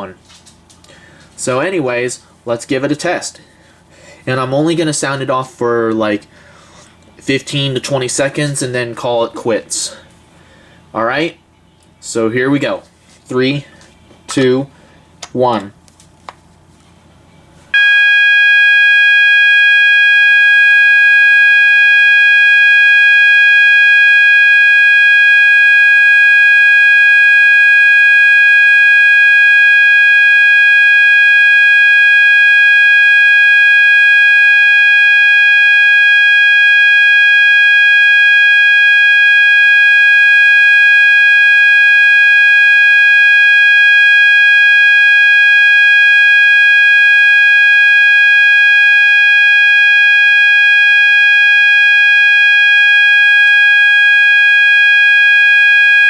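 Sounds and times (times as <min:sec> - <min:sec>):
alarm continuous tone: 0:17.2 - 0:56.0.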